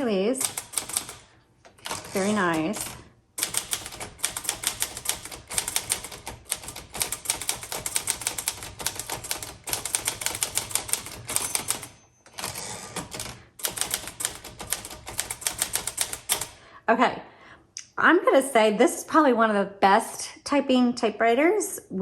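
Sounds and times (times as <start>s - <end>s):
manual typewriter keystrokes: 0.0s - 16.6s.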